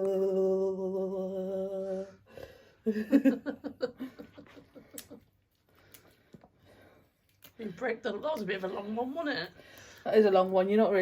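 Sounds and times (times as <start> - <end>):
person humming a long note: 0.0 - 2.3
person laughing: 2.8 - 5.3.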